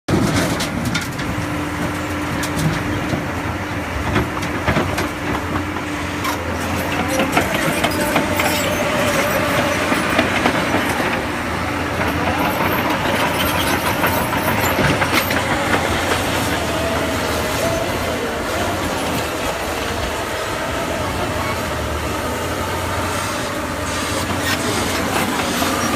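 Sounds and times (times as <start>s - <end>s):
earthmoving machine diesel drone: 0.9s - 25.9s
metallic clanks and squeals: 6.2s - 11.2s, 11.9s - 18.0s.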